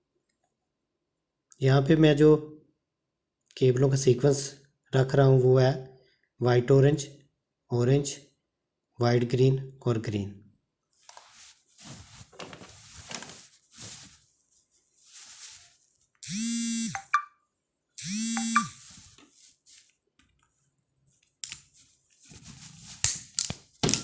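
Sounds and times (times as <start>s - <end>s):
cable wires rustling: 11.0s - 16.2s
buzzing tone ending in click: 18.0s - 18.7s.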